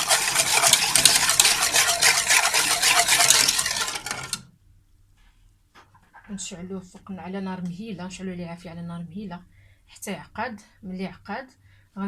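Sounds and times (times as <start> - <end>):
utensil scraping a saucepan: 0.0 - 4.4.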